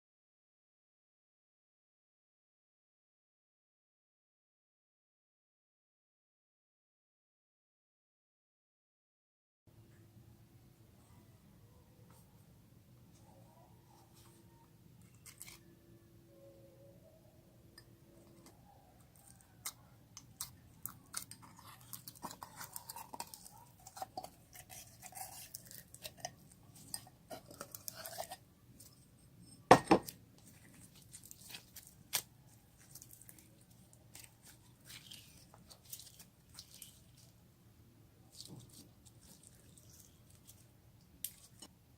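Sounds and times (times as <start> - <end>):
hands squishing slime: 19.2 - 28.9, 30.4 - 37.4, 38.2 - 41.6.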